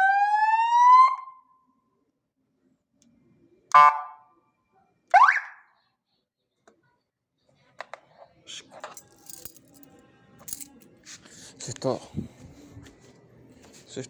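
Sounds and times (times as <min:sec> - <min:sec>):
police siren wail: 0:00.0 - 0:01.4
siren whoop: 0:00.0 - 0:01.4.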